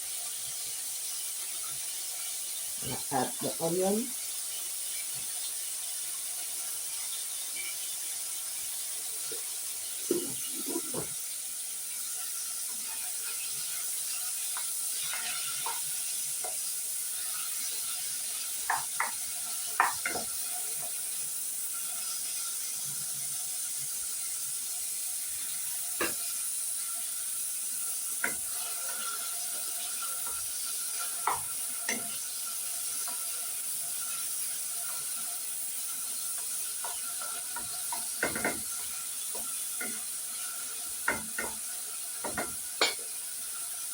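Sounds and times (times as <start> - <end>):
onion sizzling in hot oil: 0.0 - 43.9
spoon stirring against pot: 13.2 - 16.7, 18.7 - 21.0, 28.2 - 43.2.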